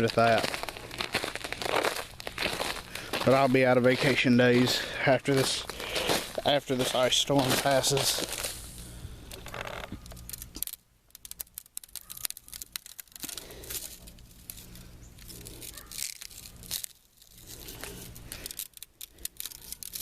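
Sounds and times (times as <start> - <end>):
footsteps crunching on icy snow: 0.0 - 10.0, 15.2 - 18.5.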